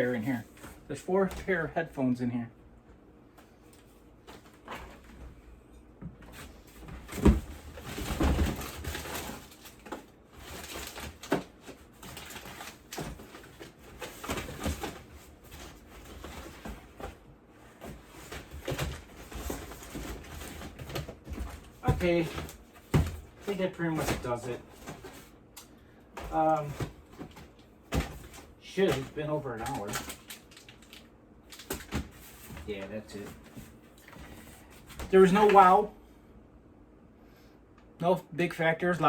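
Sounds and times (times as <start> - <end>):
boxes and wrapping rustling: 0.0 - 1.7, 3.5 - 5.4, 6.1 - 35.9.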